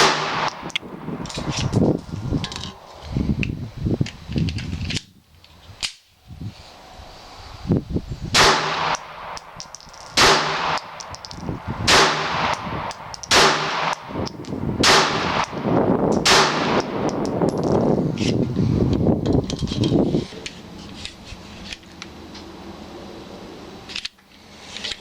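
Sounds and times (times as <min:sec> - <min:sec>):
pistol shots echoing: 0:00.0 - 0:00.7, 0:08.4 - 0:11.1, 0:11.9 - 0:14.1, 0:14.8 - 0:15.6, 0:16.2 - 0:17.1.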